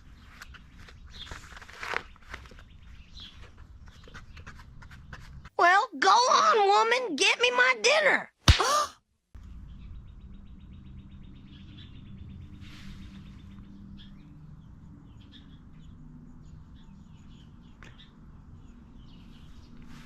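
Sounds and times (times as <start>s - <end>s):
birds chirping: 0.0s - 5.6s, 9.4s - 20.0s.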